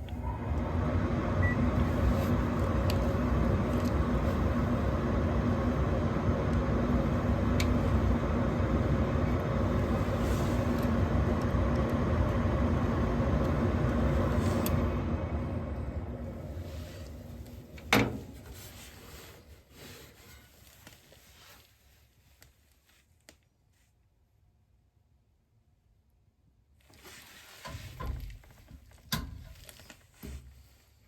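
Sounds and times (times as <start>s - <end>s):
furnace motor humming: 0.0s - 19.3s.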